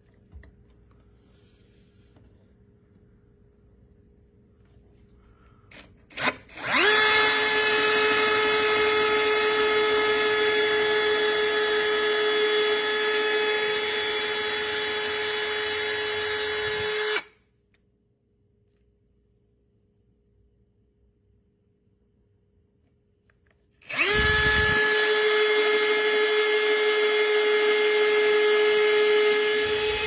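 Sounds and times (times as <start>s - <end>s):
power drill whining: 5.7s - 17.3s, 23.8s - 30.0s.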